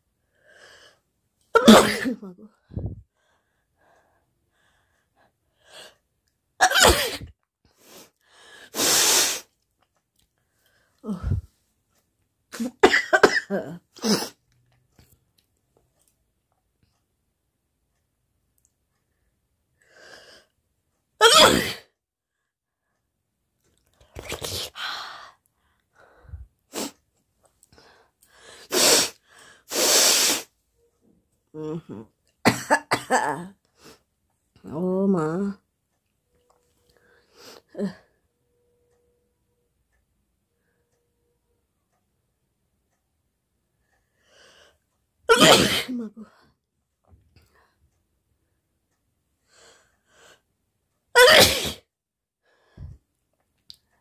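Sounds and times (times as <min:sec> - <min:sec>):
woman sneezing: 0:01.6 - 0:02.3, 0:06.6 - 0:07.3, 0:21.2 - 0:21.8, 0:45.3 - 0:46.1, 0:51.2 - 0:51.8
woman coughing: 0:01.6 - 0:02.4, 0:06.6 - 0:07.3, 0:12.6 - 0:14.4, 0:21.2 - 0:21.8, 0:32.4 - 0:33.5, 0:45.3 - 0:46.3, 0:51.2 - 0:51.8
hissing nose blow: 0:08.7 - 0:09.5, 0:28.7 - 0:30.5.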